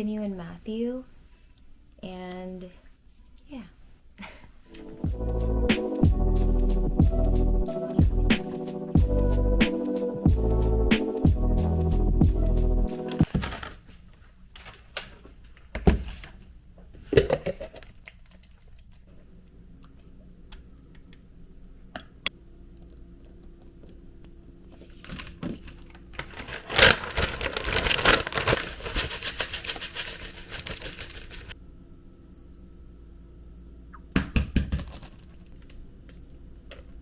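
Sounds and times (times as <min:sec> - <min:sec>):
crackling and rustling: 0:24.8 - 0:31.6.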